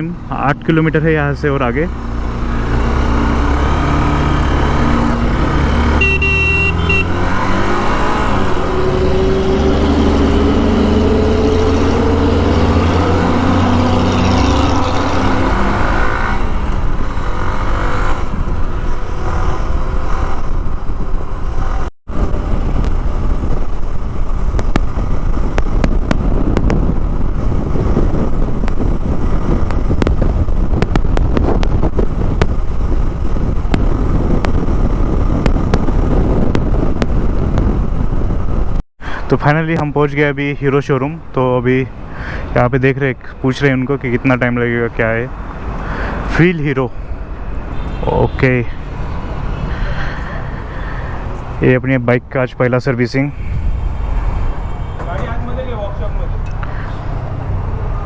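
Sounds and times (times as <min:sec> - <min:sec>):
motorcycle engine revving: 0:01.1 - 0:38.8
horn beep: 0:05.9 - 0:07.2
wind buffeting microphone: 0:06.9 - 0:38.8, 0:53.3 - 0:58.0.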